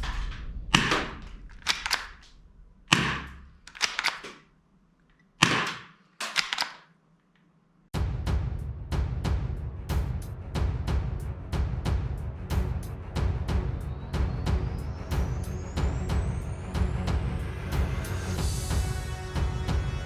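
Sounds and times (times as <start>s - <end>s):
toy cap gun bangs: 2.9s - 4.4s, 5.4s - 6.8s
music: 8.0s - 20.0s.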